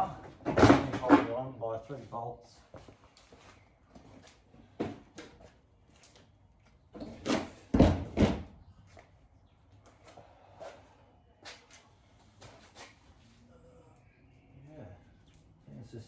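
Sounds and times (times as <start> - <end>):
tools knocking and clunking: 0.1 - 1.4.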